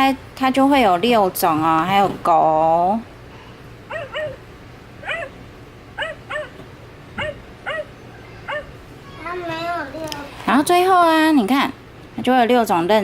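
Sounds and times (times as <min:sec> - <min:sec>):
recorded dog barking: 0:03.9 - 0:04.4, 0:05.0 - 0:05.4, 0:06.0 - 0:06.6, 0:07.2 - 0:08.8.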